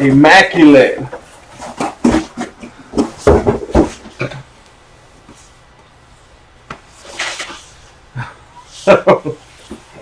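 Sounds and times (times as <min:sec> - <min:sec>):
cardboard boxes knocking and rustling: 0:01.1 - 0:04.3.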